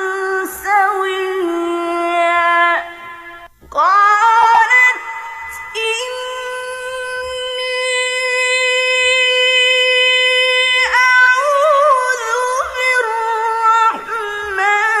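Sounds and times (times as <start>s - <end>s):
solo voice singing: 0.0s - 15.0s.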